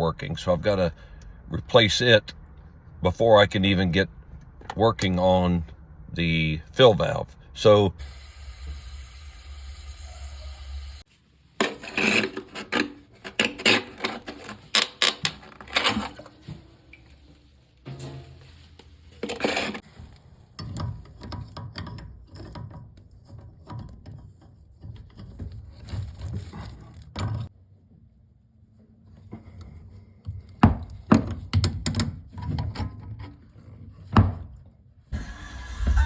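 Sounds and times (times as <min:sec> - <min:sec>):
hand tools knocking and scraping: 0:11.6 - 0:16.6, 0:17.9 - 0:19.8.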